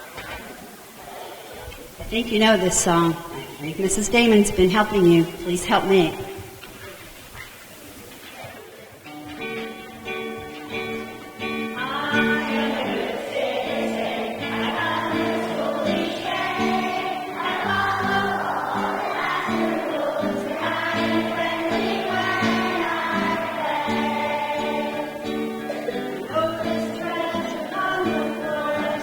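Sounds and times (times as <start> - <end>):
children singing in unison: 0.0 - 2.0, 10.7 - 29.0.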